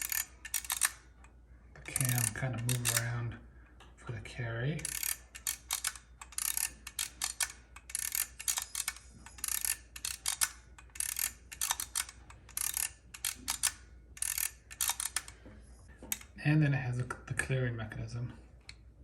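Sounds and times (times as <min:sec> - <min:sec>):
adding machine keys clicking: 0:00.0 - 0:01.0, 0:01.8 - 0:03.2, 0:04.8 - 0:15.4.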